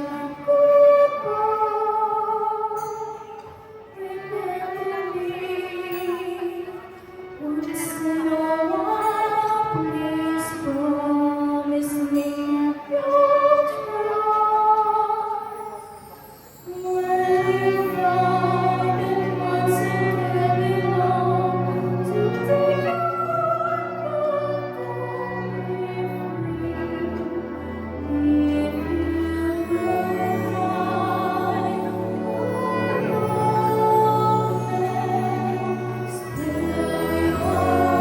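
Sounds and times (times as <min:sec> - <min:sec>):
person singing: 0:16.7 - 0:38.0.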